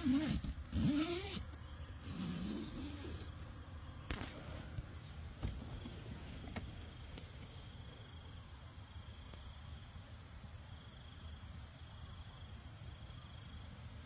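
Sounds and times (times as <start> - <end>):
insects trilling: 0.0 - 4.4.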